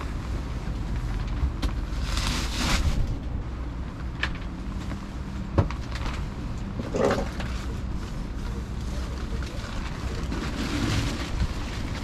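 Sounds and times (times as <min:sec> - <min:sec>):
tarp rustling and flapping: 0:01.0 - 0:03.4, 0:05.7 - 0:06.4, 0:08.9 - 0:12.0.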